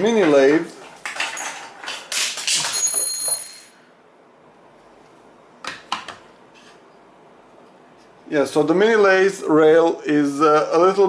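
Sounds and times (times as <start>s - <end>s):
short metallic ring: 2.7s - 3.9s.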